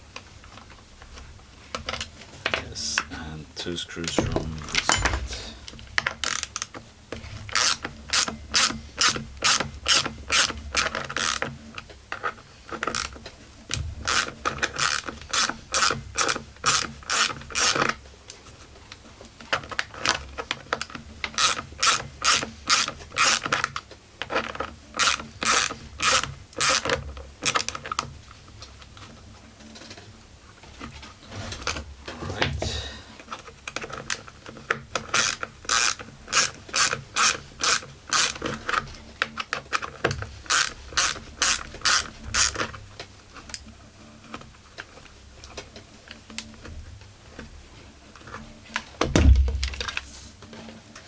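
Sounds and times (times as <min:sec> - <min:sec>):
hand ratchet clicking: 0:35.0 - 0:38.5, 0:40.4 - 0:42.6.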